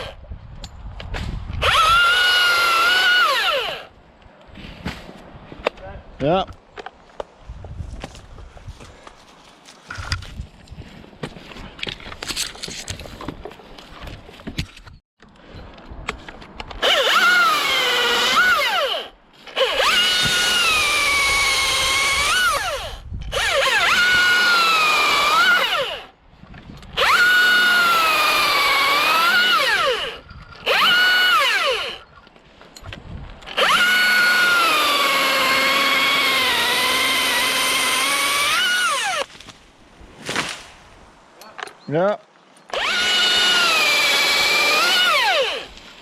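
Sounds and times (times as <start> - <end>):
chainsaw cutting wood: 1.6 - 3.9, 16.8 - 26.1, 26.9 - 32.1, 33.4 - 39.4, 42.7 - 46.0.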